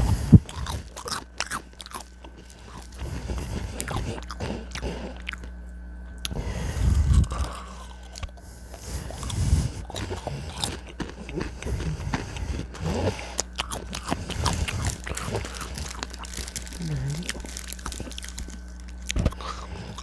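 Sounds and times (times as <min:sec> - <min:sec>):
chewing and crunching: 0:00.0 - 0:20.0.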